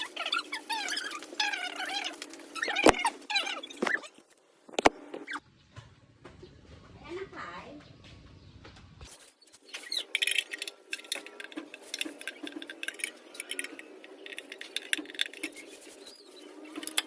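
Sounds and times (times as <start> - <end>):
metal tools clicking and clinking: 9.7 - 17.0.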